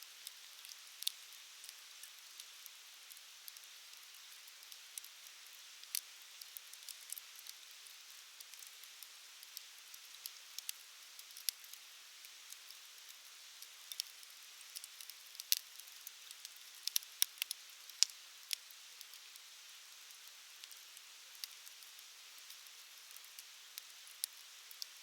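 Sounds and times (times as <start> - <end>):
faint steady hiss: 0.0 - 25.0
campfire crackling and popping: 0.6 - 2.1, 13.9 - 19.1, 21.4 - 25.0.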